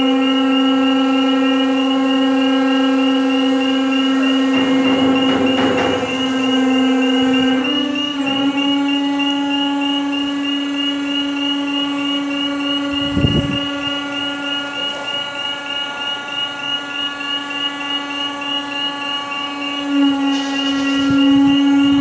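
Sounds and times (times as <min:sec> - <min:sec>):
high-pitched motor whine: 0:00.0 - 0:22.0.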